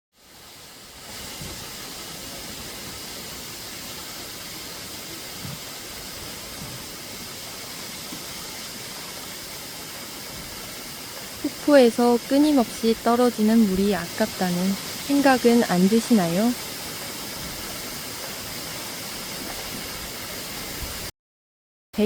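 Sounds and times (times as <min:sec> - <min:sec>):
waterfall rushing: 0:00.2 - 0:21.1.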